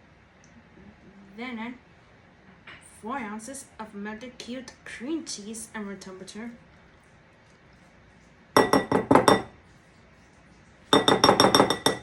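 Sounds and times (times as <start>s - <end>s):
utensil clinking against bowl: 8.6s - 9.6s, 10.9s - 12.0s.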